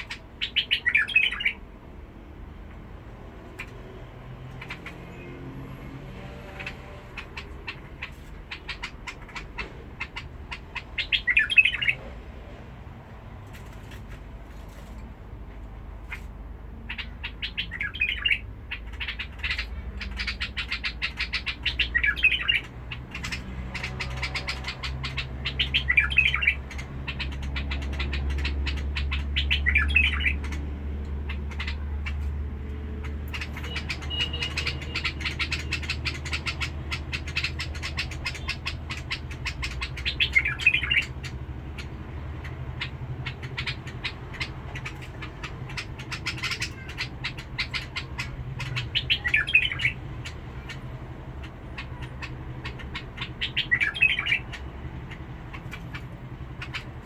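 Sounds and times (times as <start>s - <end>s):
bulbul singing: 0.0s - 1.7s, 3.4s - 12.1s, 16.0s - 57.0s.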